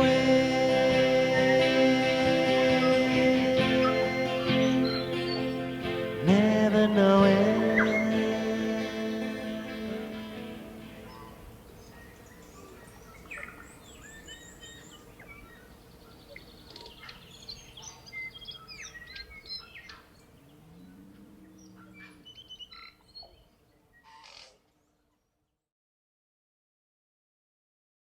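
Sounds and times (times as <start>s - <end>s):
low drawn-out bird call: 0.0s - 17.2s
birds chirping and trilling: 0.0s - 25.0s.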